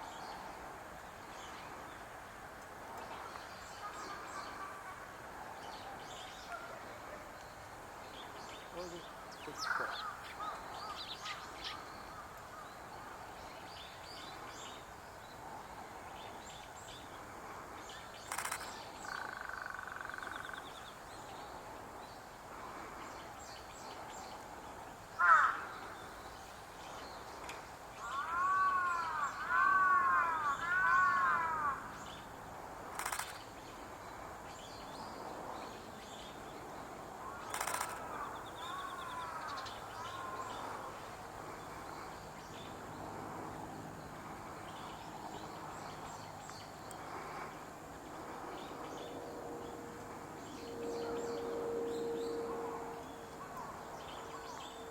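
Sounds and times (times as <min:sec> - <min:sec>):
sharp clicks: 0:18.3 - 0:18.7, 0:32.9 - 0:33.4, 0:37.4 - 0:38.1.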